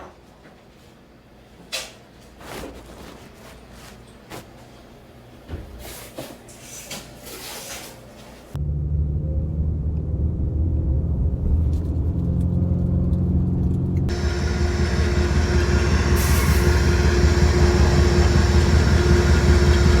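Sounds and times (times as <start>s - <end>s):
motor low rumble: 8.6s - 20.0s
hissy running noise with hum: 14.1s - 20.0s.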